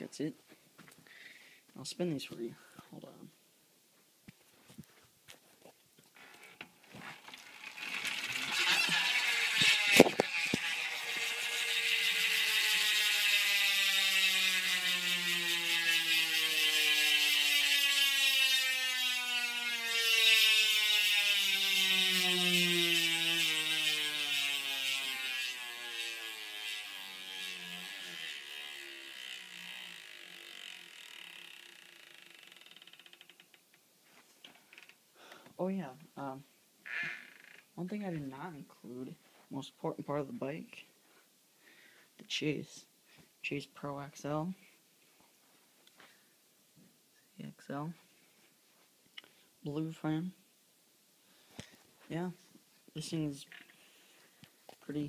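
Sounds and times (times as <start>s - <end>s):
bicycle freewheel buzzing: 6.2s - 33.6s.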